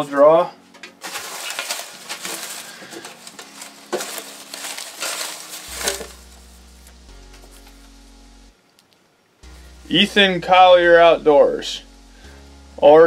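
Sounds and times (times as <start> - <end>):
paper slips rustling: 0.8 - 6.6.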